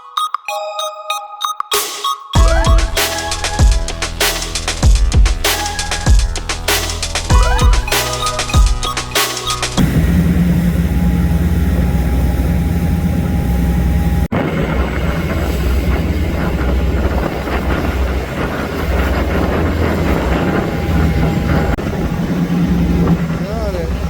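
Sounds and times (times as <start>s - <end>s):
boat engine drone: 2.4s - 24.0s
rushing wind and water: 14.3s - 24.0s.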